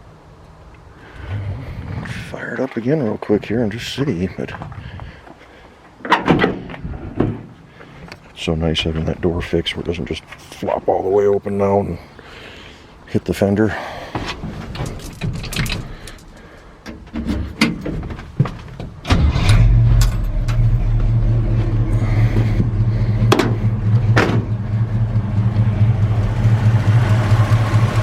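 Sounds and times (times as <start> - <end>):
truck engine idling: 18.3 - 28.0
sharp knocks: 22.6 - 24.6
clicks and knocks in cab: 23.2 - 24.6.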